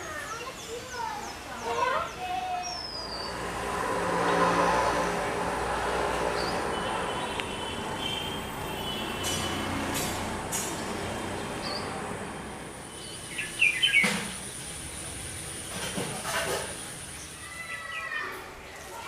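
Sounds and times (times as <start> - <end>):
small birds chirping: 0.0 - 3.7, 6.2 - 9.5, 11.6 - 12.0, 12.8 - 15.2.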